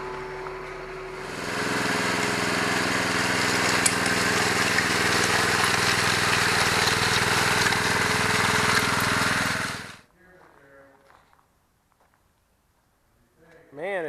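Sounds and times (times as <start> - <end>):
small engine running: 0.0 - 10.0.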